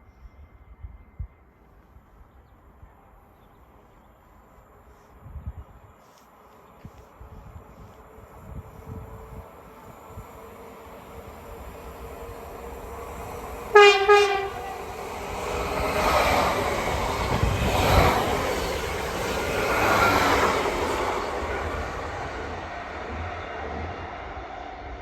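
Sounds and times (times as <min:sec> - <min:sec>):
train wheels on rails: 0:06.0 - 0:25.0
train horn blasts: 0:13.7 - 0:14.9.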